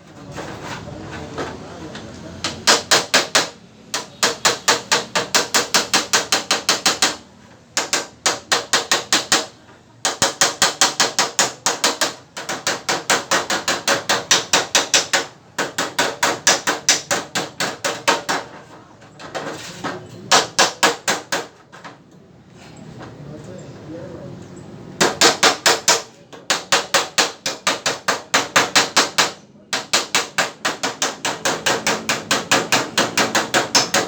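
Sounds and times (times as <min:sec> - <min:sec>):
hammer tapping on metal: 0:02.4 - 0:18.6, 0:25.0 - 0:34.0.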